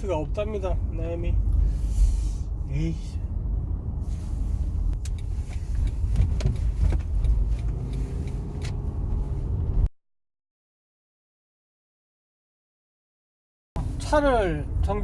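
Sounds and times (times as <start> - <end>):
car rumble: 0.0 - 9.9, 13.8 - 15.0.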